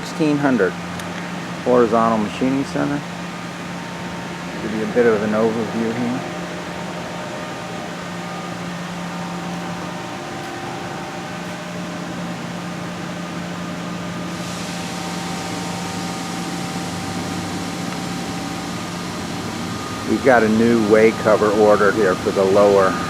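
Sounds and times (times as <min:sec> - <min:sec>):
machine-shop hum: 0:00.0 - 0:23.0
hiss: 0:14.2 - 0:23.0.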